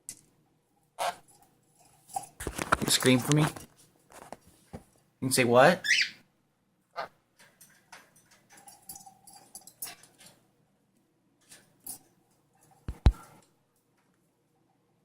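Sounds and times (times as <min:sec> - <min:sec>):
soft parrot squeak: 0:05.8 - 0:06.2.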